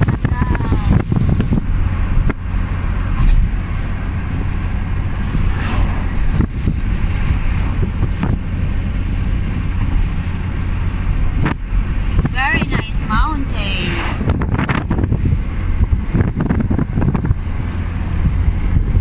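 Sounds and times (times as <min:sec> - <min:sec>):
road and engine rumble: 0:00.0 - 0:19.0
wind buffeting microphone: 0:00.0 - 0:19.0.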